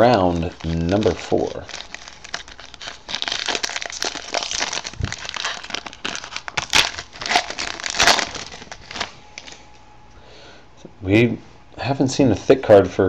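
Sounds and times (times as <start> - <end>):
plastic wrapping crinkling and tearing: 0.0 - 9.7.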